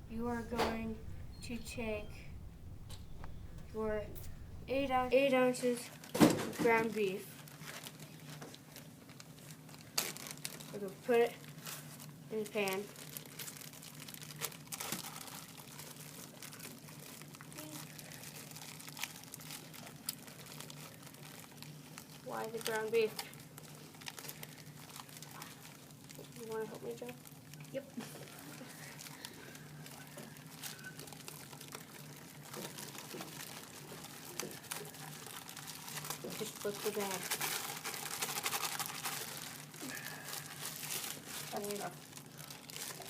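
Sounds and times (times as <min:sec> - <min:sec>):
steady low hum: 0:00.0 - 0:05.1
plastic packaging crackling: 0:00.0 - 0:05.2, 0:09.6 - 0:10.7, 0:12.9 - 0:27.6, 0:28.9 - 0:43.0.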